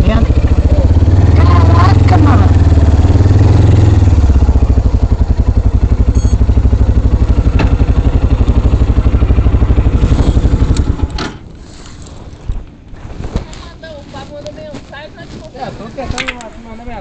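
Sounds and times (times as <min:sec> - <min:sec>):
motorcycle engine idling: 0:00.0 - 0:11.2.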